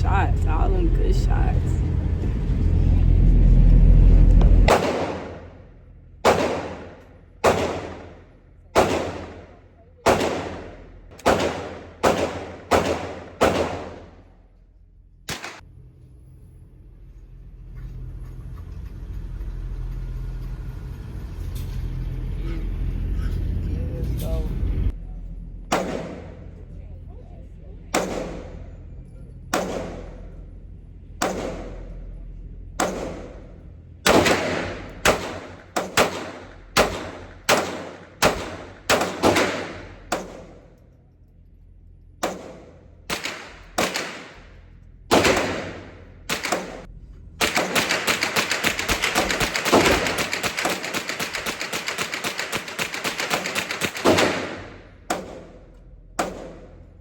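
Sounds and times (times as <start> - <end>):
gunshots echoing: 4.6 - 14.3, 15.3 - 15.6, 25.7 - 26.6, 27.9 - 28.8, 29.5 - 30.4, 31.2 - 32.0, 32.8 - 40.8, 42.2 - 57.0
rapid burst of gunfire: 4.7 - 5.6, 6.2 - 14.2, 34.1 - 40.7, 42.2 - 55.6.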